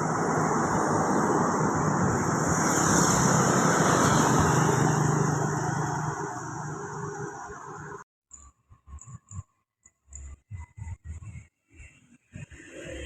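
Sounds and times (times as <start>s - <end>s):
bus passing by: 0.0s - 8.0s.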